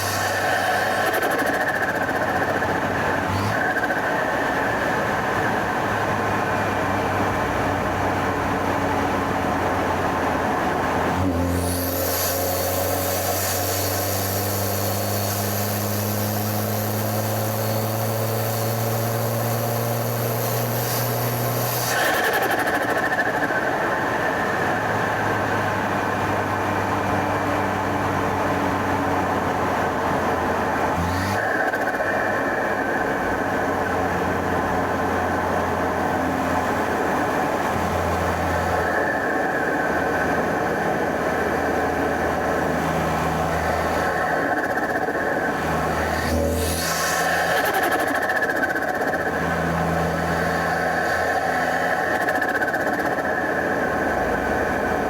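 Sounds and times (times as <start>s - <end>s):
car engine cruising: 0.0s - 55.0s
loud high intake hiss: 11.4s - 21.9s.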